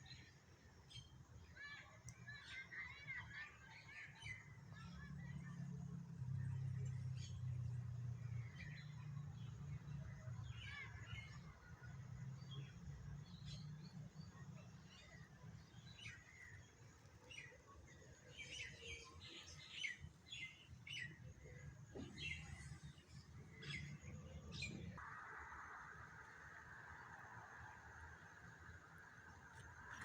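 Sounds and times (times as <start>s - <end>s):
small birds chirping: 12.4s - 25.0s.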